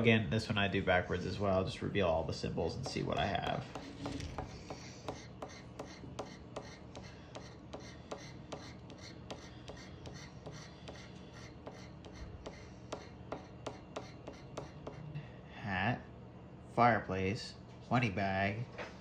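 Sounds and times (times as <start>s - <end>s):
lottery ticket being scratched: 2.6s - 13.3s.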